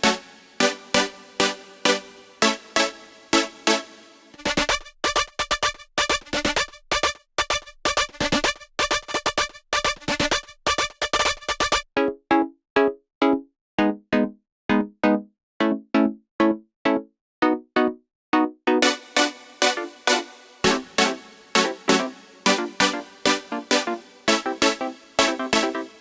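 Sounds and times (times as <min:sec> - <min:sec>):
synth bass pattern: 0:00.0 - 0:03.8, 0:18.8 - 0:25.9.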